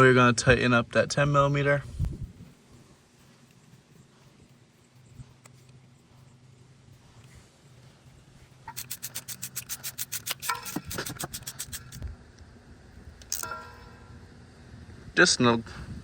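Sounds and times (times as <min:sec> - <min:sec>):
ratchet wrench clicking: 0:08.7 - 0:12.0.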